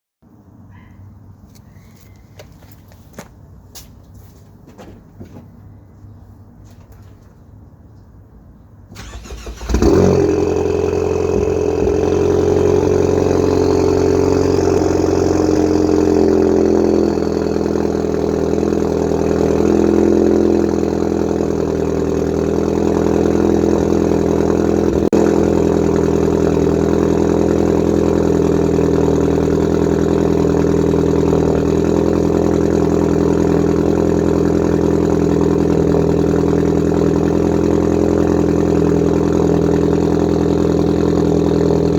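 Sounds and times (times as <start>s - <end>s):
car engine starting and idling: 8.8s - 41.9s.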